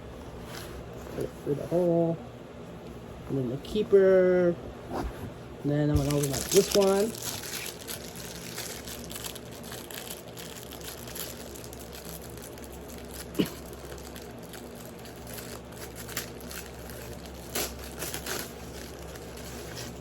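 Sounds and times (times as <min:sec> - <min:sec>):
packaging crinkling and rustling: 0:06.0 - 0:20.0.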